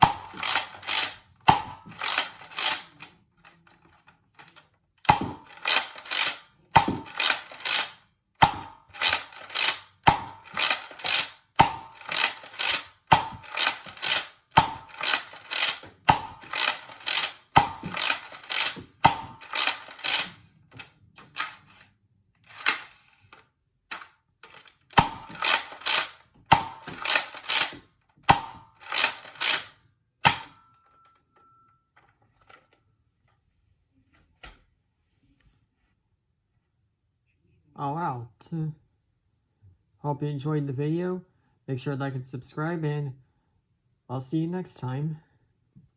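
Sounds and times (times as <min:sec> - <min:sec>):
toy blaster pumped and fired: 0:00.0 - 0:03.0, 0:05.0 - 0:21.6, 0:22.5 - 0:23.2, 0:23.9 - 0:30.6.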